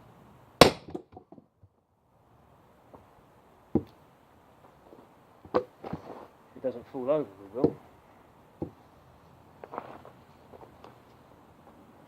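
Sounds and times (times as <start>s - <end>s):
sledgehammer striking steel wedge: 0.6s - 1.1s.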